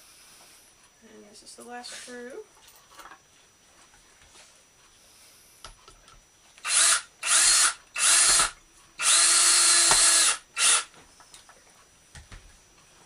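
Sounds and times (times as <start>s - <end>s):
power drill driving screw into wood: 6.6s - 10.9s.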